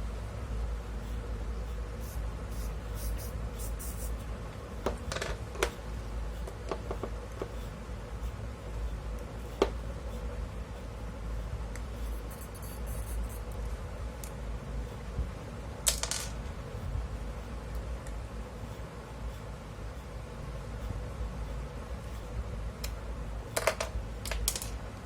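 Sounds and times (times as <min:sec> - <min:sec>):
sharp clicks and knocks: 0:22.8 - 0:24.8.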